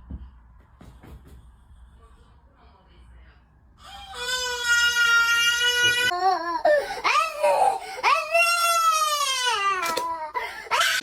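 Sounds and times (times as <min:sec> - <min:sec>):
baby crying: 0:03.8 - 0:11.0.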